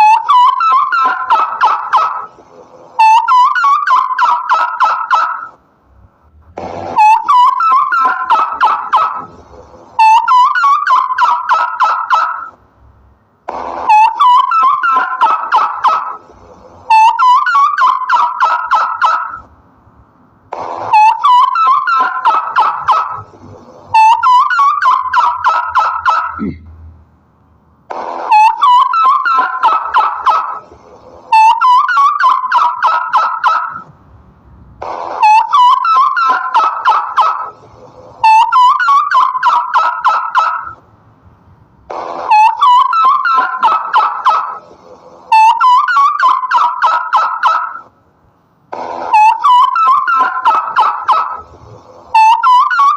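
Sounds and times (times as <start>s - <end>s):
turkey gobbling: 0.0s - 2.3s, 3.0s - 5.5s, 7.0s - 9.3s, 10.0s - 12.5s, 13.9s - 16.2s, 16.9s - 19.4s, 20.9s - 23.2s, 23.9s - 26.6s, 28.3s - 30.6s, 31.3s - 33.8s, 35.2s - 37.6s, 38.2s - 40.8s, 42.3s - 44.6s, 45.3s - 47.9s, 49.1s - 51.4s, 52.1s - 52.9s.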